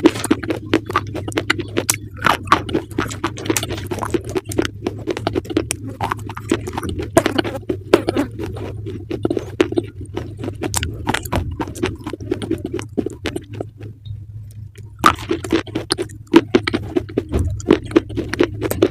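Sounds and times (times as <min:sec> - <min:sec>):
mouth sounds: 0:00.0 - 0:14.1
chewing crunchy food: 0:00.0 - 0:18.9.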